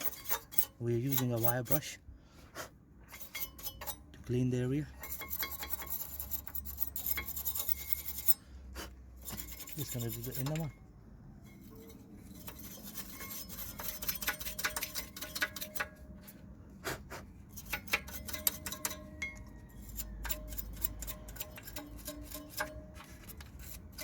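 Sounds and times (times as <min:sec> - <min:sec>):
wire brush scraping rusty metal: 0:00.0 - 0:02.0, 0:02.6 - 0:10.8, 0:11.4 - 0:24.0.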